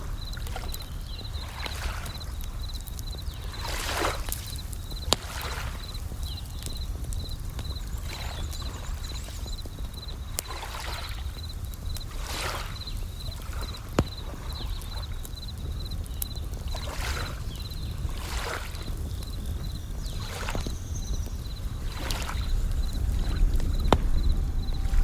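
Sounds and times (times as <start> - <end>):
campfire crackling pops: 0.0 - 25.0
crickets chirping: 0.0 - 25.0
waves washing: 21.4 - 25.0
low steady rumble: 21.7 - 25.0.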